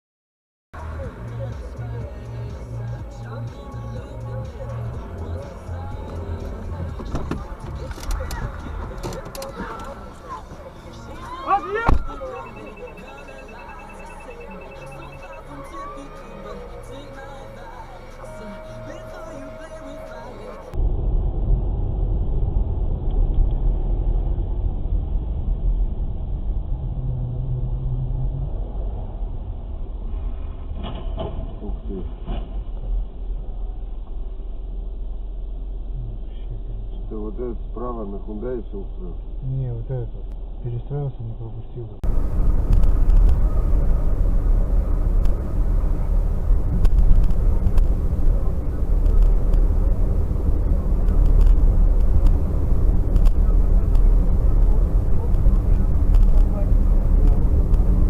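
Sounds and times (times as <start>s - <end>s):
car road and engine rumble: 0.8s - 58.0s
low drone: 12.1s - 40.8s, 41.7s - 58.0s.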